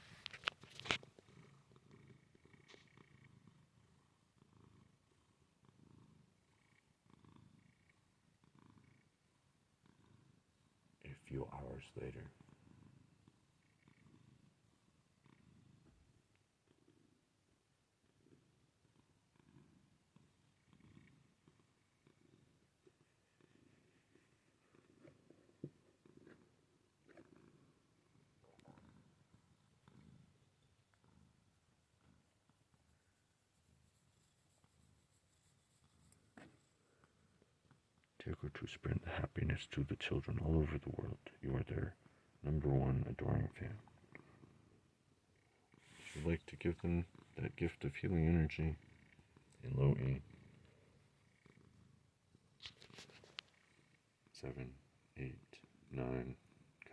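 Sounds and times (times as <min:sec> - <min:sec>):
cat purring: 0:00.0 - 0:56.9.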